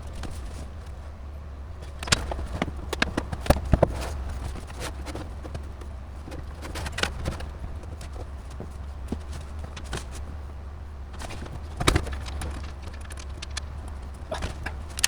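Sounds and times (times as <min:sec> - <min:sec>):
steady low hum: 0:00.0 - 0:15.0
computer hardware clicking: 0:12.6 - 0:13.7.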